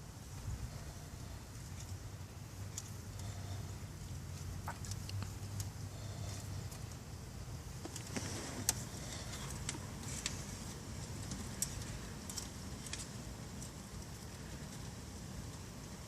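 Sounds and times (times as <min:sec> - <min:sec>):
light clicks and ticks: 0:11.0 - 0:15.0.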